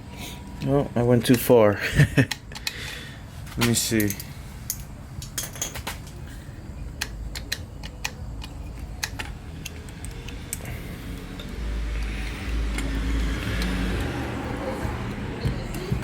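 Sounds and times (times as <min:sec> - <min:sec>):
tools clicking and tapping: 0:02.2 - 0:03.0, 0:03.6 - 0:06.2, 0:06.9 - 0:14.2.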